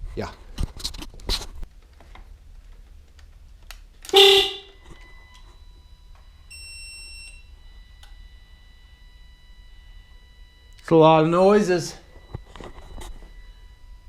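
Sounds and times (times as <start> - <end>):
horn-like chirp: 4.2 - 4.8
electronic warning tones: 4.2 - 14.0
high beep: 6.5 - 10.0.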